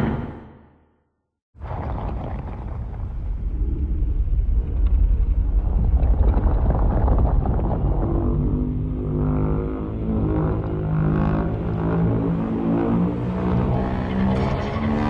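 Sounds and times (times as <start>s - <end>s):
deep rattling monster rumble: 1.6s - 13.3s.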